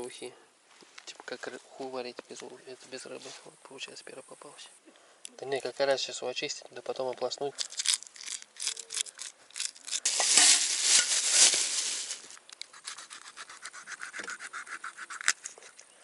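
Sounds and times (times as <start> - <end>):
knife scraping fish scales: 7.6 - 15.9.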